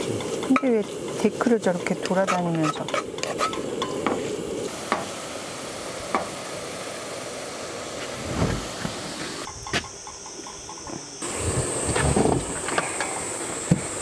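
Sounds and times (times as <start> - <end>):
food sizzling in a pan: 0.0 - 10.6.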